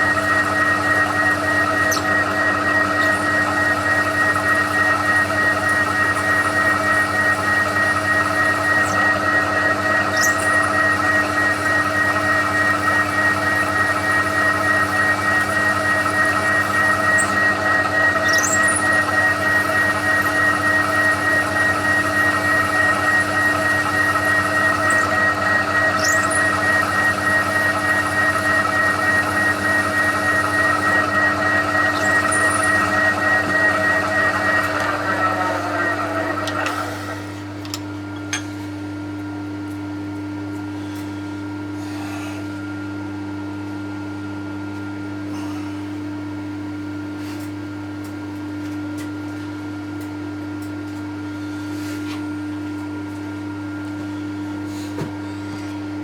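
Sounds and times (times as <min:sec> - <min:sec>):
milling machine whine: 0:00.0 - 0:44.2.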